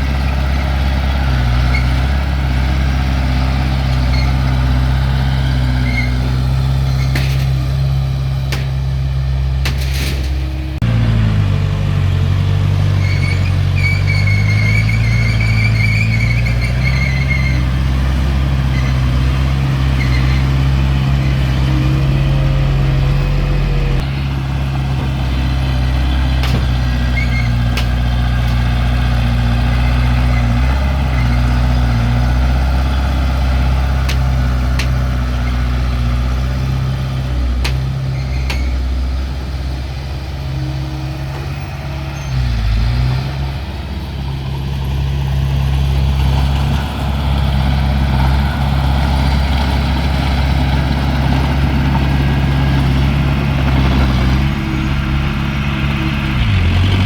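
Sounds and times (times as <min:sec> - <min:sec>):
heavy diesel engine droning: 0:00.0 - 0:57.0.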